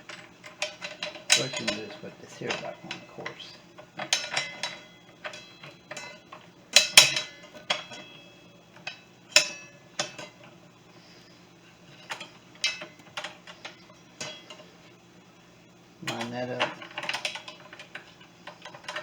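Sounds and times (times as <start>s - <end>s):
metal parts clinking: 0.1s - 8.2s.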